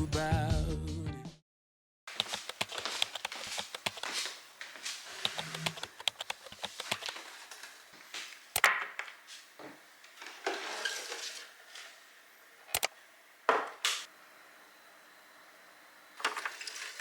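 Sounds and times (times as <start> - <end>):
sharp clicks: 5.2 - 7.1, 12.7 - 12.9.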